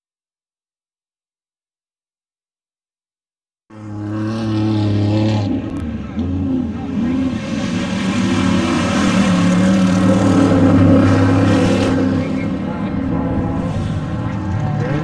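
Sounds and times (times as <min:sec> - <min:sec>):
race vehicle engines revving: 0:03.7 - 0:15.0.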